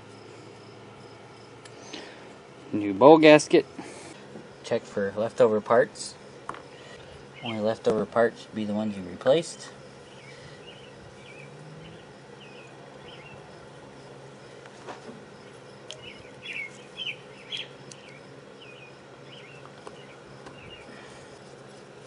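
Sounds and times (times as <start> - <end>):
faint steady hum: 0.0 - 22.0
small birds chirping: 5.4 - 14.7, 15.4 - 21.7.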